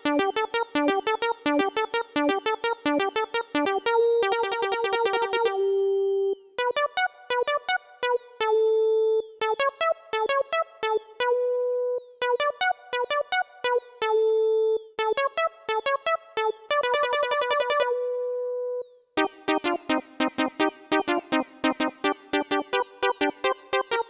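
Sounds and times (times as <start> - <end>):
synthesizer lead melody: 0.0 - 5.9, 12.2 - 14.2, 15.0 - 18.2, 19.2 - 24.0.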